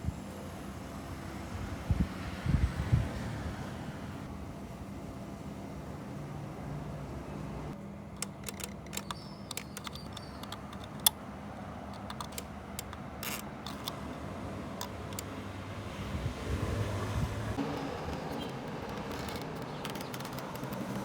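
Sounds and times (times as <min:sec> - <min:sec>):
small hard parts clicking: 0:08.1 - 0:14.0, 0:14.8 - 0:15.4, 0:17.6 - 0:21.0.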